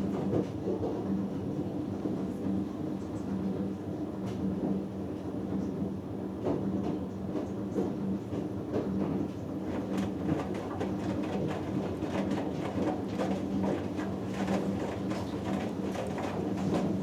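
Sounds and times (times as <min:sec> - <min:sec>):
washing machine motor hum: 0:11.0 - 0:17.0.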